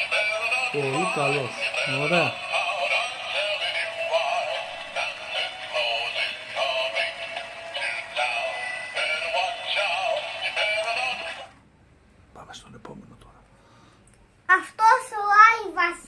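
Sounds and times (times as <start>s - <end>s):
recorded singing voice: 0.0s - 11.6s
toy playing christmas song: 0.0s - 11.6s.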